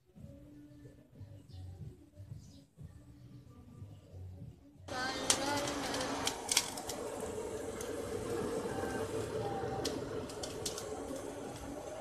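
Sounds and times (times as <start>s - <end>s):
forge fire rushing: 4.9s - 12.0s.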